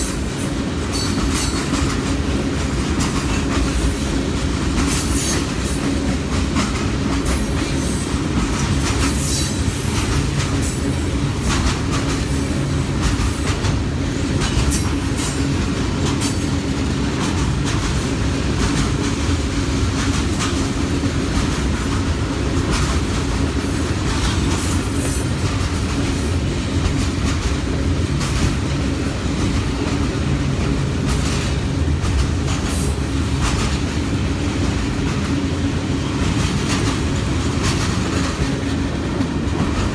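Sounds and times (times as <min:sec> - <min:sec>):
train cars clanking: 0:00.0 - 0:39.9
train wheels rumbling on rail: 0:00.0 - 0:39.9.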